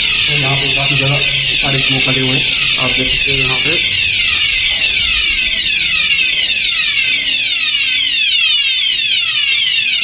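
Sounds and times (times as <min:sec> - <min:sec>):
fire alarm sounder sweeping: 0:00.0 - 0:10.0.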